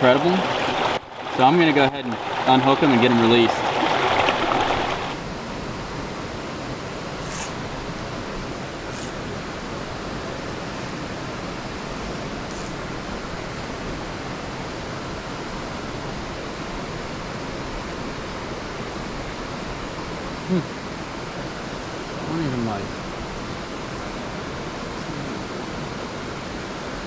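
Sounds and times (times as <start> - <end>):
creek rushing over rocks: 0.0 - 5.2.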